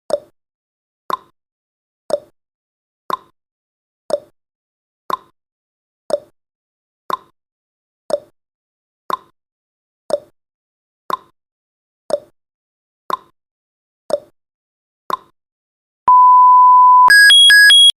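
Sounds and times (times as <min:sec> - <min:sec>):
fast two-tone alarm beeps: 0:16.1 - 0:18.0
steady beep: 0:16.1 - 0:18.0.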